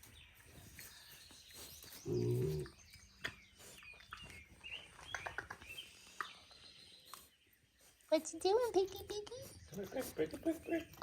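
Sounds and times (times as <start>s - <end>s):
faint birds chirping: 0.0s - 11.0s
pig grunting: 2.0s - 2.8s.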